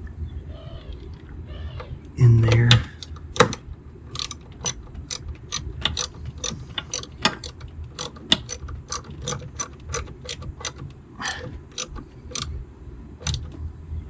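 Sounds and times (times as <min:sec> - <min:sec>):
ratchet wrench clicking: 0:02.5 - 0:12.5, 0:13.2 - 0:13.6.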